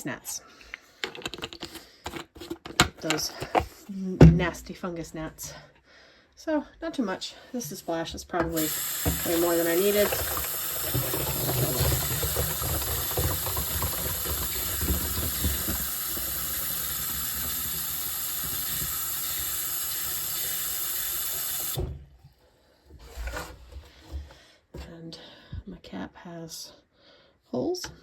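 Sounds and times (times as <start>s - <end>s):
tap water filling plastic bottle: 8.4s - 22.0s
water splashing and gurgling: 8.6s - 16.6s.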